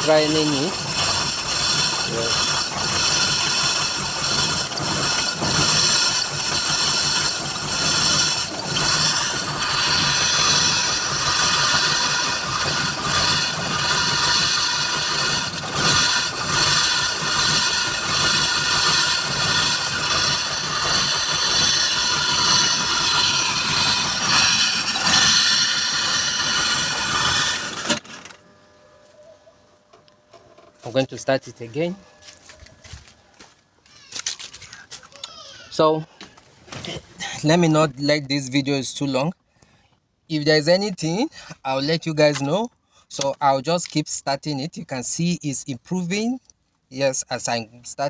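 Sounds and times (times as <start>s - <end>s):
car engine struggling: 0.0s - 28.7s.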